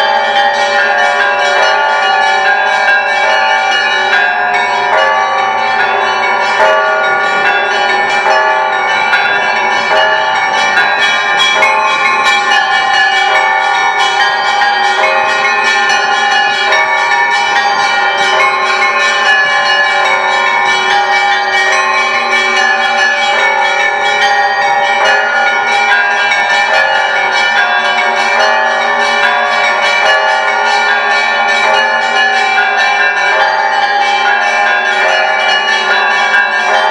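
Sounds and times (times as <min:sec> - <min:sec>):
large bells humming: 0:00.0 - 0:36.9
small bells chiming rapidly: 0:00.0 - 0:36.9.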